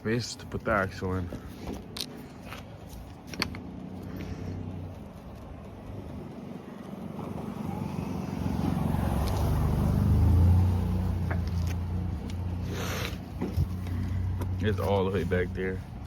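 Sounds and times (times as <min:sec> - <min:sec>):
vehicle engine passing by: 0:03.6 - 0:15.8.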